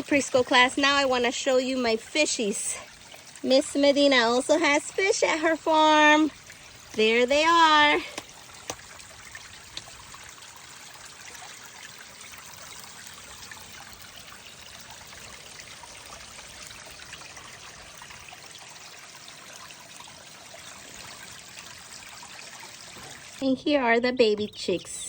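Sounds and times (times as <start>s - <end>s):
water trickling: 0.0s - 25.0s.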